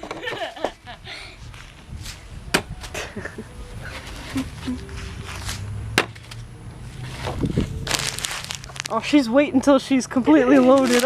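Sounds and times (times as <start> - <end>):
steady low rumble: 0.8 - 9.7
bean bags thudding: 7.3 - 9.0, 10.7 - 11.0.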